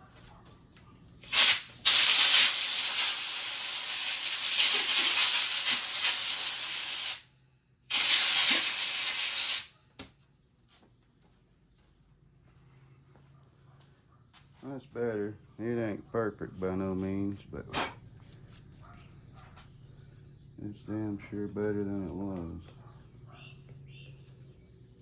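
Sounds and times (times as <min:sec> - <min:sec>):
compressed air blasts: 0:01.2 - 0:07.3, 0:07.9 - 0:09.7, 0:17.6 - 0:18.1.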